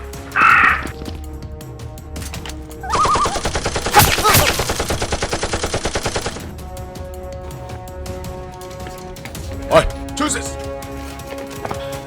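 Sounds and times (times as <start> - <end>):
automatic gunfire: 2.9 - 6.5.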